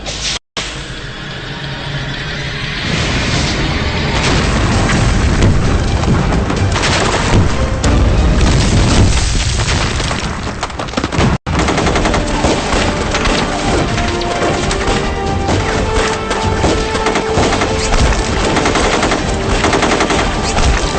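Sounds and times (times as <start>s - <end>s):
background music: 0.6s - 9.1s, 11.5s - 20.9s
rapid gunfire: 11.0s - 20.9s.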